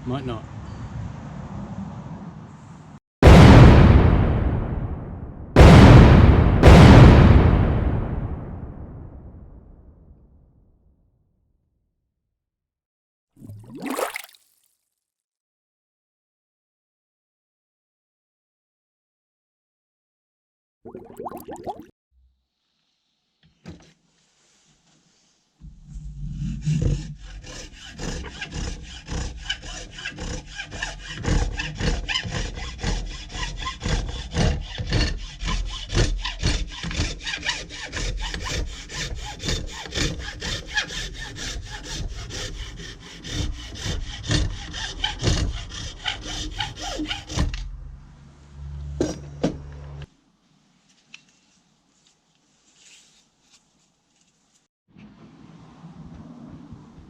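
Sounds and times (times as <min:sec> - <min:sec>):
hand saw cutting: 0:26.3 - 0:47.7.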